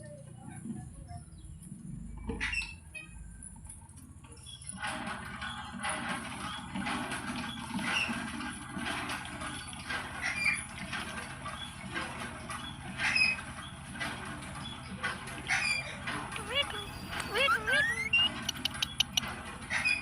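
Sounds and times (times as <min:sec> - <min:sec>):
parrot scratching and clicking: 0:16.2 - 0:20.0
parrot squeaks: 0:16.4 - 0:20.0.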